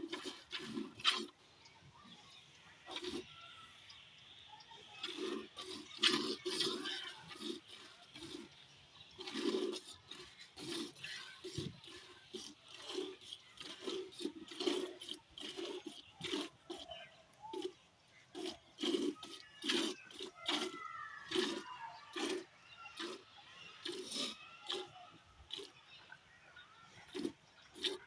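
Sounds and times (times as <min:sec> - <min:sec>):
animals grunting: 0:09.2 - 0:25.8.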